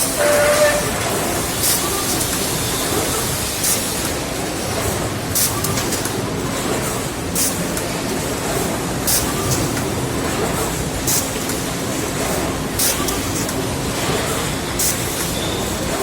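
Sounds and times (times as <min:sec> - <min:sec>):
factory machinery din: 0:00.0 - 0:16.0.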